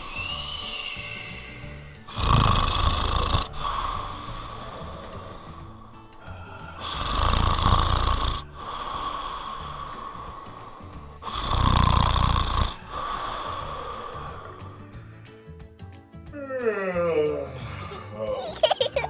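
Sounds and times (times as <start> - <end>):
quiet breathing: 0.0 - 2.2, 3.4 - 11.5, 12.7 - 15.6
loud snores: 0.0 - 15.2.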